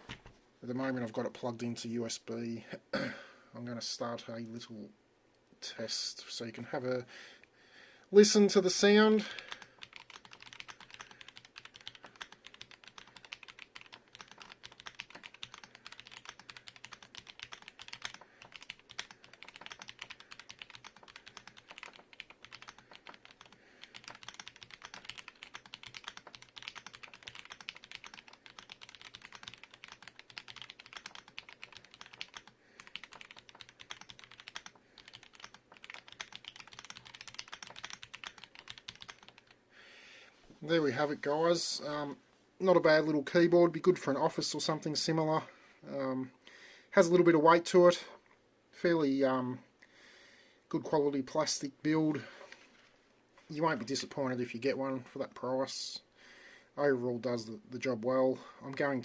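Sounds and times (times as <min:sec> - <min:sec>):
mechanical keyboard typing: 0:09.3 - 0:39.6.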